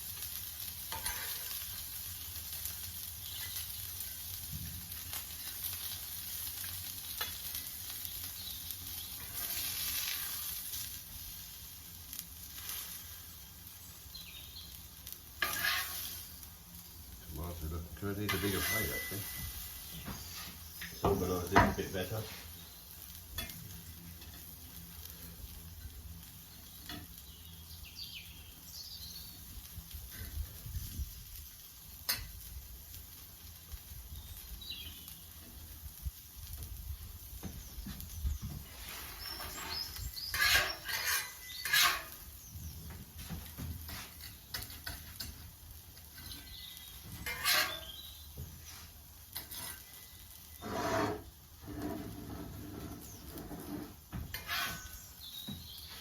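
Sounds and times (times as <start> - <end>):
metal utensils scraping and clinking: 0.9 - 1.6, 15.4 - 16.3, 17.6 - 19.7, 38.8 - 42.3, 43.9 - 45.5, 46.1 - 48.1, 49.4 - 55.1
faint birds chirping: 1.1 - 30.9, 33.2 - 36.0, 36.9 - 50.7, 51.6 - 56.0.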